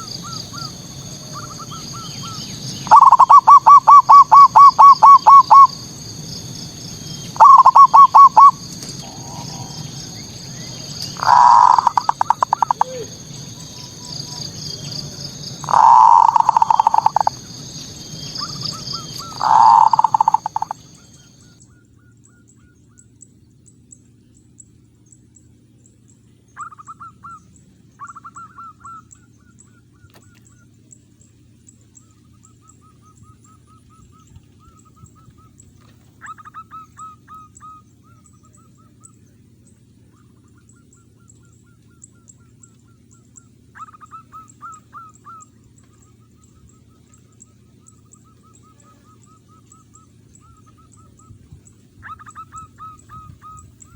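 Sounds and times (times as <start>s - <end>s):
dove cooing: 0.0s - 6.0s, 6.9s - 21.6s, 33.0s - 39.0s, 43.8s - 53.9s
faint high rapid ticking: 10.0s - 13.8s, 15.5s - 18.0s, 19.1s - 21.0s.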